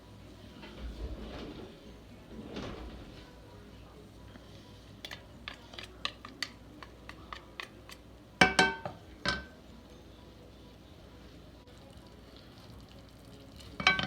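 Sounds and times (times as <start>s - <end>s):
metal clanks with ringing: 8.4s - 9.6s.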